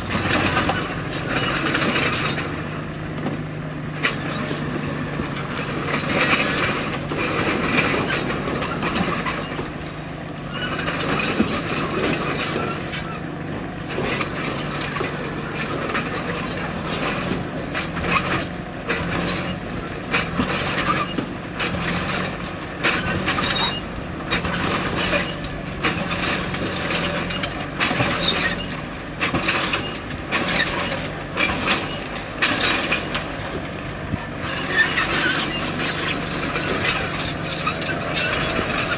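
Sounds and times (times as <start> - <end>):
bulldozer engine running: 0.0 - 38.9
steel tracks clanking: 0.0 - 38.9
rock scraping: 21.6 - 38.9.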